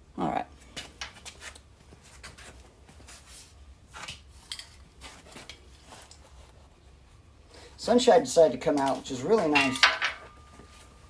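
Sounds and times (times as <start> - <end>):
metallic clinks of small parts: 8.8 - 10.9.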